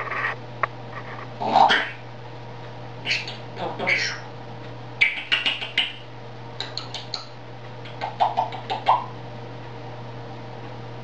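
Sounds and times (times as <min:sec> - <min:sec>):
parrot clicking: 0:05.0 - 0:06.0, 0:06.6 - 0:09.1.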